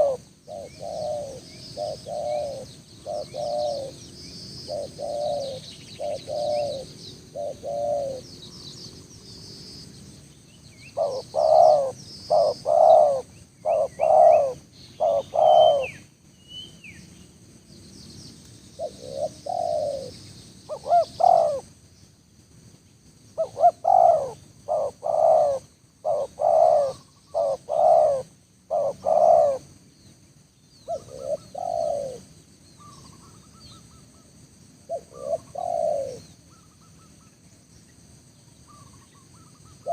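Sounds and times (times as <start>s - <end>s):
dove cooing: 0.0s - 8.8s, 10.9s - 16.1s, 18.8s - 21.7s, 23.4s - 29.8s, 30.8s - 34.0s, 34.9s - 37.1s, 38.7s - 39.9s
small birds chirping: 0.0s - 39.9s.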